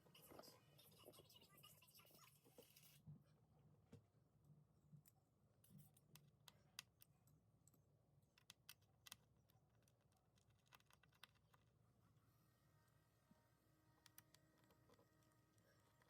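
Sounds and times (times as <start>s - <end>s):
small clicks and ticks: 8.4s - 11.7s.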